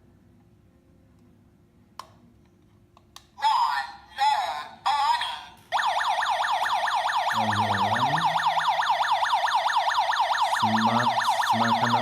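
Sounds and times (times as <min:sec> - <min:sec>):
alarm siren wailing: 0:05.7 - 0:12.0
warbling electronic beeps: 0:06.5 - 0:12.0.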